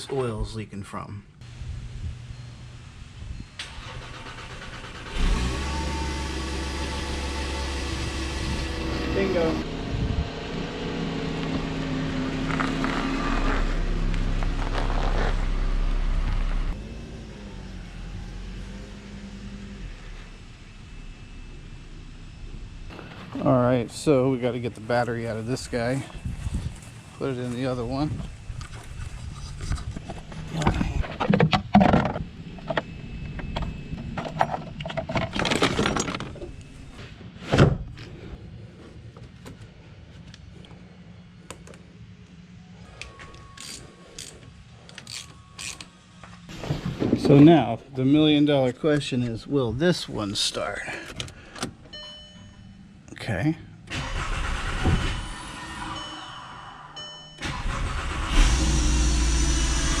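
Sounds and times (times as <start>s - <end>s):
starter motor cranking: 3.6s - 9.5s
car engine running: 5.1s - 28.1s
brief high tone: 55.1s - 57.6s.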